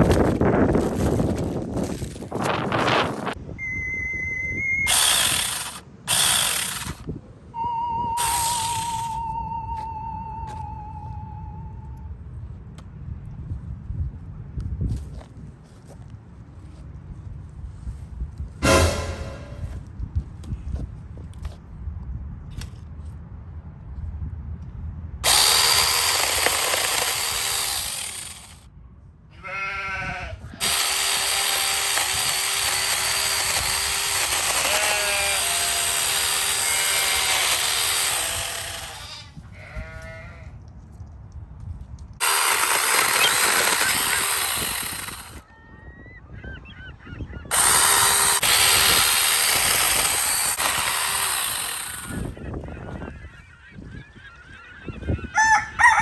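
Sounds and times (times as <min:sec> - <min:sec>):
cordless chainsaw running: 0:04.9 - 0:07.0, 0:08.2 - 0:09.2, 0:25.2 - 0:28.6, 0:30.6 - 0:39.1, 0:42.2 - 0:45.4, 0:47.5 - 0:52.2.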